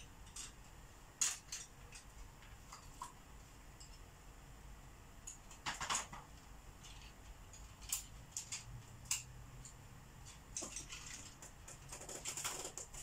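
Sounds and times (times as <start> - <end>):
markers scratching on paper: 11.5 - 13.0.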